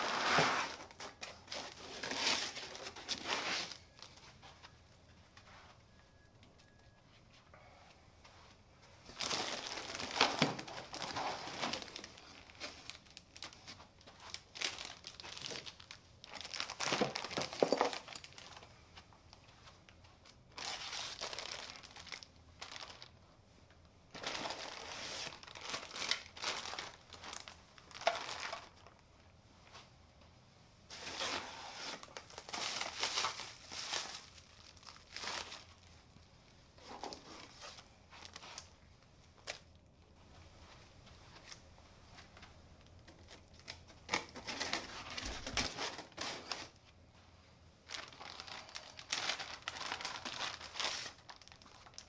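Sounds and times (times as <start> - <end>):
packaging crinkling and tearing: 9.1 - 18.7, 20.2 - 23.2, 24.1 - 29.0, 30.9 - 35.9, 42.4 - 46.8, 47.8 - 52.0.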